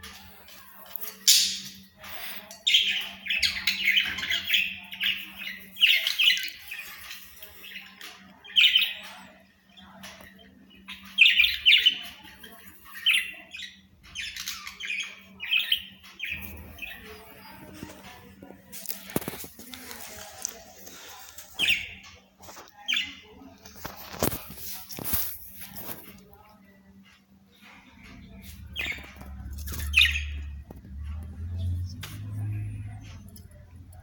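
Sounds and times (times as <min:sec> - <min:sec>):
budgerigars chattering and squawking: 0:01.2 - 0:09.2, 0:10.2 - 0:18.0, 0:28.4 - 0:30.8.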